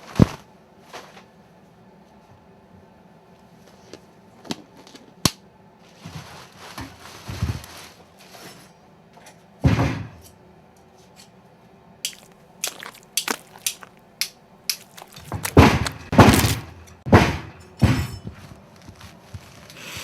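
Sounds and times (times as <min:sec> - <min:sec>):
scraping and rustling: 0:14.7 - 0:16.7.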